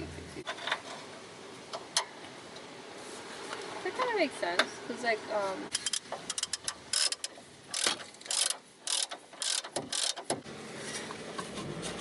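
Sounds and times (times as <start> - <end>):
ratchet wrench clicking: 5.7 - 10.4.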